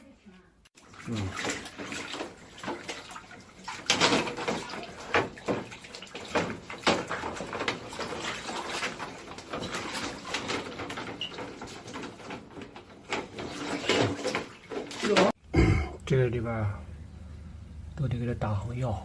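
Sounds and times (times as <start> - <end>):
water splashing and running: 0.8 - 15.4.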